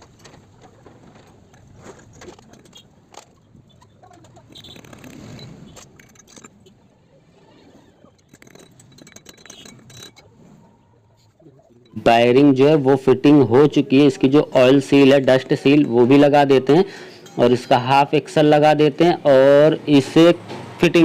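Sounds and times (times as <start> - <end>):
metallic clicks and clinks: 2.5 - 6.7, 8.1 - 10.4.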